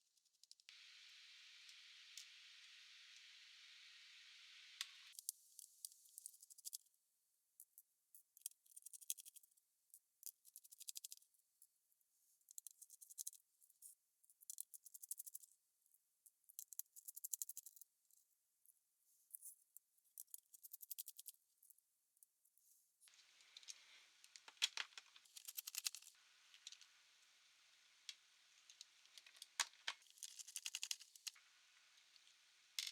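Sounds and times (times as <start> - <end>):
small parts clicking and rattling: 23.6 - 26.9, 28.6 - 31.4.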